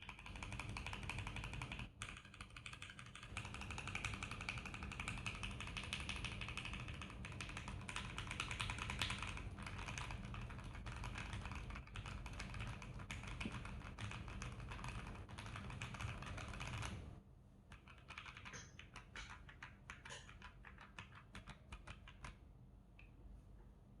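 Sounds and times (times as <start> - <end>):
mechanical keyboard key clacks: 0.0 - 17.0.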